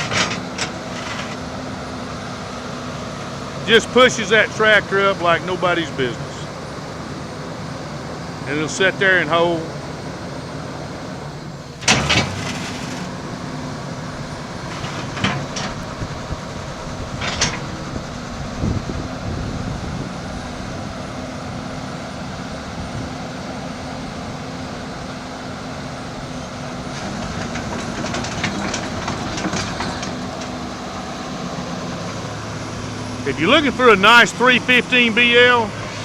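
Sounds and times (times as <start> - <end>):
metallic clanks: 0.0 - 1.5, 11.8 - 13.1, 14.6 - 16.2, 17.1 - 17.8, 26.9 - 30.6
excavator diesel engine running: 0.0 - 36.0
rattling clicks: 17.2 - 17.7.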